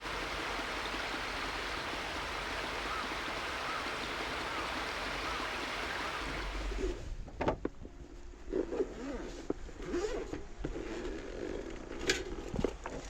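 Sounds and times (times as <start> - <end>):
running water rushing: 0.0 - 7.0.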